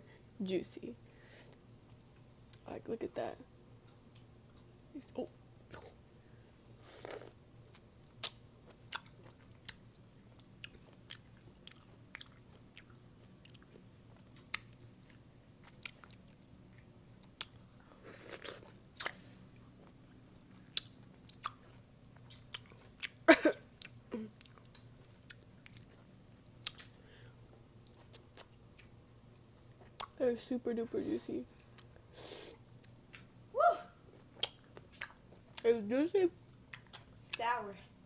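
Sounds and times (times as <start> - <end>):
person chewing crunchy pickles: 6.9 - 30.2, 34.1 - 35.6, 36.7 - 37.2.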